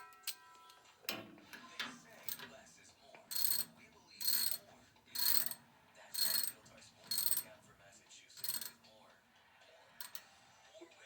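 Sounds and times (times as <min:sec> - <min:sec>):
ratchet wrench clicking: 0:03.3 - 0:07.5, 0:08.4 - 0:08.8.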